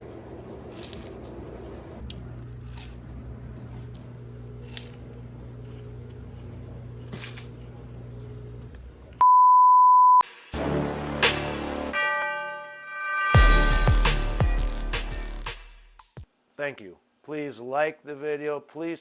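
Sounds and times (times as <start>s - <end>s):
music: 10.2s - 16.3s.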